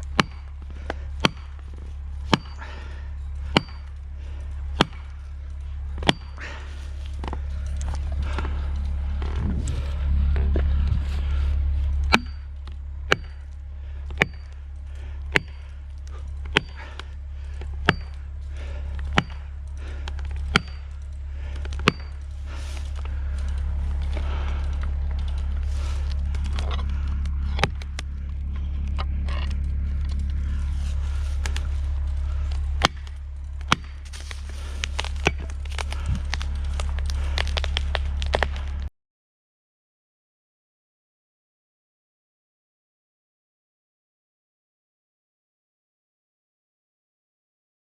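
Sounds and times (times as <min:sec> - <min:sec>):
chainsaw idling: 0:00.0 - 0:38.9
sharp ringing knocks: 0:14.2 - 0:14.5.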